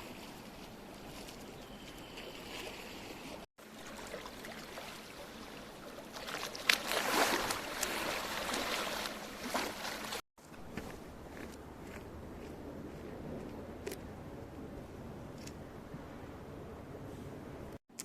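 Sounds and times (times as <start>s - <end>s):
sea water splashing at shore: 0.0s - 10.2s.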